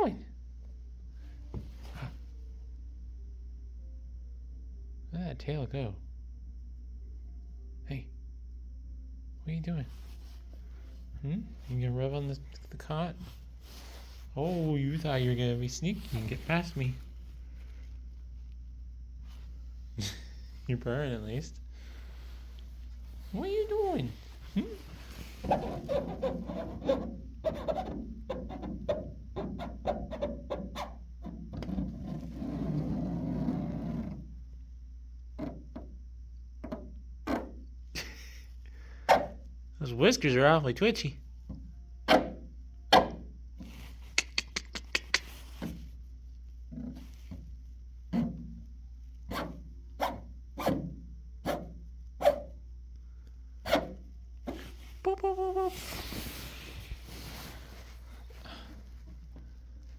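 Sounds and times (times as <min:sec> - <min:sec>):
steady low hum: 0:00.0 - 0:59.9
person making sharp mouth noises: 0:44.0 - 0:45.6, 0:55.0 - 0:56.5
person making clicking mouth noises: 0:44.1 - 0:45.4.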